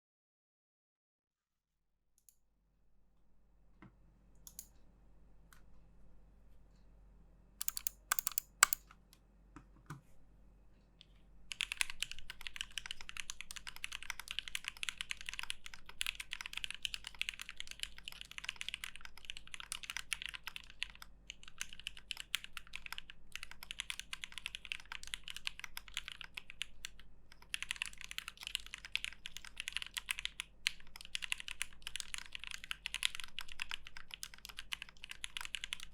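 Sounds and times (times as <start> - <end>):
mechanical keyboard typing: 4.4 - 4.7, 7.6 - 8.9, 11.5 - 35.9.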